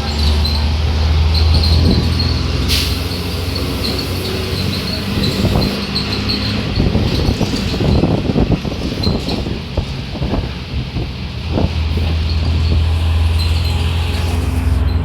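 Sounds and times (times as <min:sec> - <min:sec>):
bus diesel engine drone: 0:00.0 - 0:15.0
short hiss: 0:02.7 - 0:03.5
body rattles and knocks: 0:05.3 - 0:12.8.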